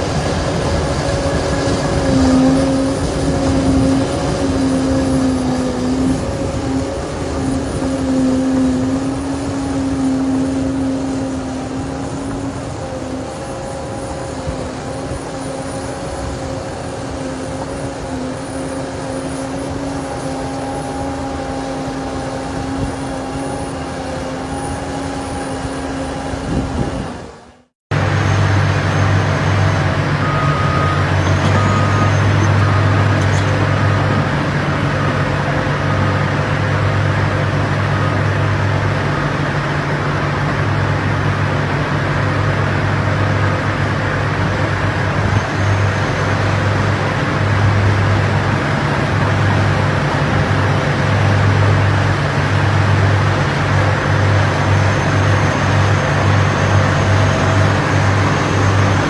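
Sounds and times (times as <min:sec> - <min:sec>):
bulldozer diesel engine running: 0:00.0 - 0:59.0
faint reversing alarm beeps: 0:29.0 - 0:34.4.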